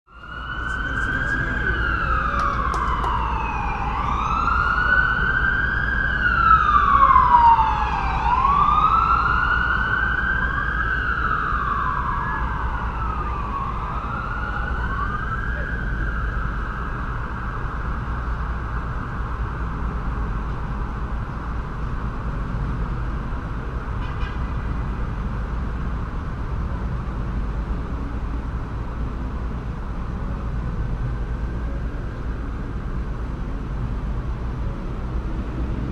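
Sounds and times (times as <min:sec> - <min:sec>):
emergency vehicle siren wailing: 0:00.1 - 0:23.9
low rumble of city traffic: 0:00.1 - 0:35.9.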